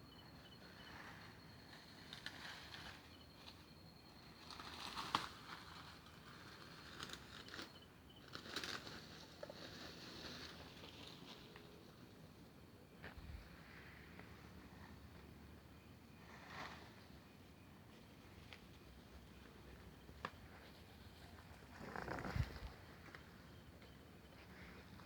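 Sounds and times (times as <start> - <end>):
rustling in dry leaves: 4.4 - 12.2.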